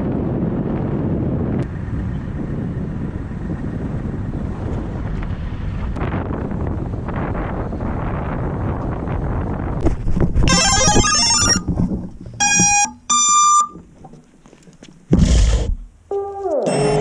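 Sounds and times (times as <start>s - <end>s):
short electronic beeps and tones: 10.4s - 11.7s, 12.3s - 13.8s
falling synth glides: 10.5s - 11.7s.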